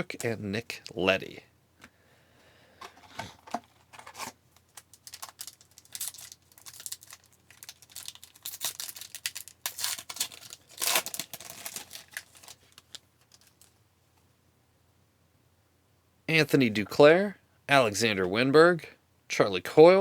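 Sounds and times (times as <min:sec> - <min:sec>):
foil wrapper tearing and crinkling: 0:04.0 - 0:13.7.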